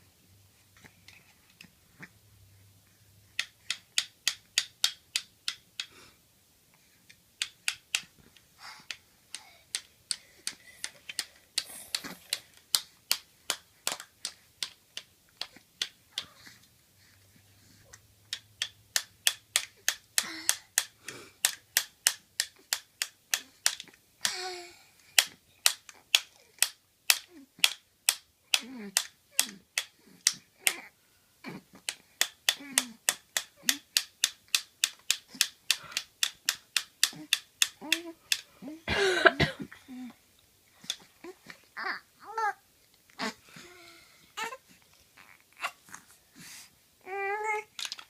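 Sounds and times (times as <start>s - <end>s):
toy hammer tapping plastic: 3.4s - 5.9s, 7.4s - 8.1s, 8.9s - 16.3s, 18.2s - 24.4s, 25.2s - 30.8s, 31.8s - 38.5s, 47.8s - 48.0s.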